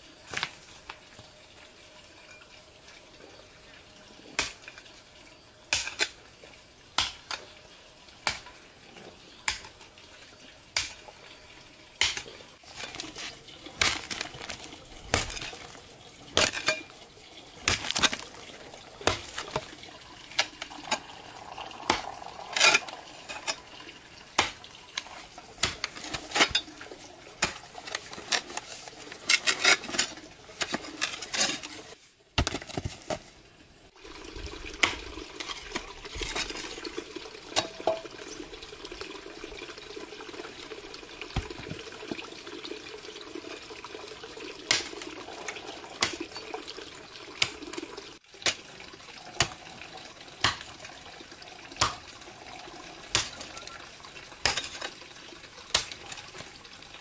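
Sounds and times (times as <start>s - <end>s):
dishes and utensils clinking: 21.9s - 23.7s.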